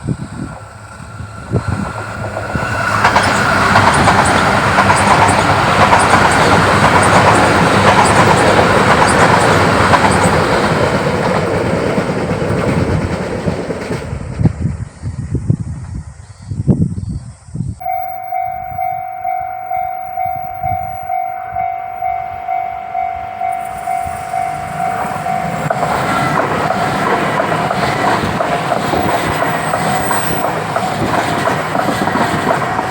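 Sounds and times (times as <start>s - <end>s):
train passing with wheel clatter: 0.0s - 16.2s, 17.8s - 32.9s
level-crossing bell ringing: 17.8s - 27.0s.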